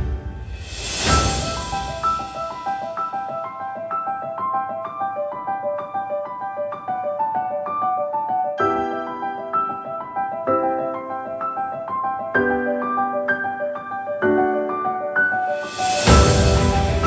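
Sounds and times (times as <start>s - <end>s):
low piano chords: 0.0s - 17.0s
piano run of single notes: 15.6s - 17.0s.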